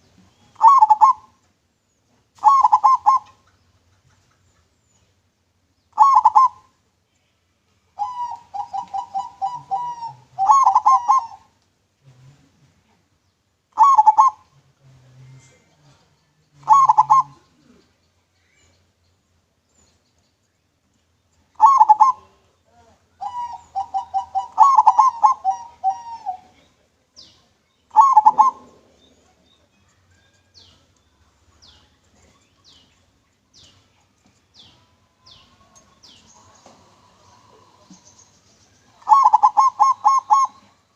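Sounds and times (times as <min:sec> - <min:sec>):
dove cooing: 0:00.0 - 0:01.4, 0:02.4 - 0:04.7, 0:06.0 - 0:06.7, 0:08.0 - 0:11.5, 0:13.8 - 0:14.5, 0:16.6 - 0:18.0, 0:21.6 - 0:30.8, 0:36.2 - 0:38.1, 0:38.9 - 0:40.8.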